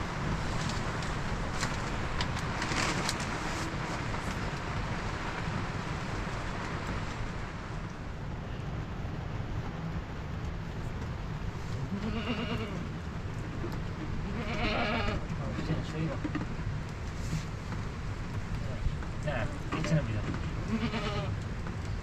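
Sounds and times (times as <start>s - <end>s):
rain: 0.0s - 22.0s
wind: 0.0s - 22.0s
animal bleating: 11.9s - 12.8s, 14.2s - 15.2s, 20.6s - 21.4s.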